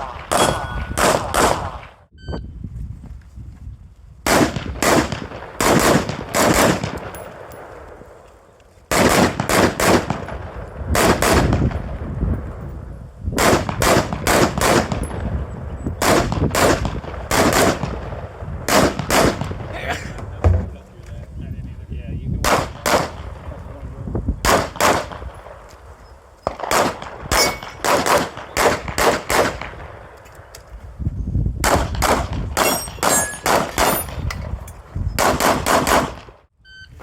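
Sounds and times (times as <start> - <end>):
gunshots: 0.0 - 2.1, 4.2 - 7.8, 8.9 - 12.0, 13.4 - 15.2, 16.0 - 20.8, 22.4 - 23.6, 24.4 - 25.6, 26.4 - 30.2, 31.6 - 34.2, 35.2 - 36.4.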